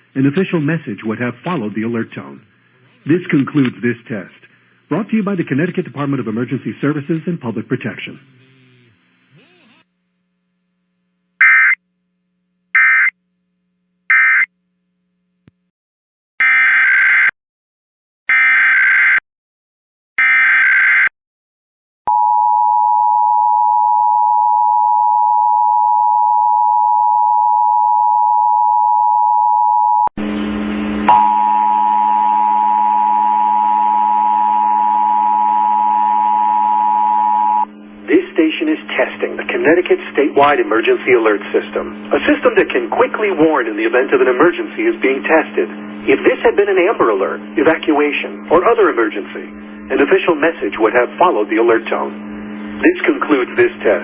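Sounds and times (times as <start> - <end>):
low hum and hiss: 0.0 - 11.4, 37.6 - 54.0
two-tone attention signal: 31.1 - 37.7.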